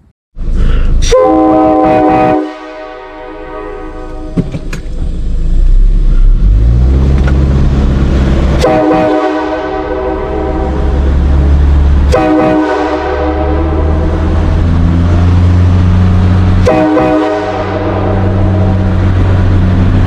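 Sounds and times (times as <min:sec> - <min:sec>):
steady low drone: 0:00.4 - 0:20.0
train horn blasts: 0:01.0 - 0:04.4, 0:08.6 - 0:11.3, 0:12.0 - 0:14.6, 0:16.6 - 0:18.9.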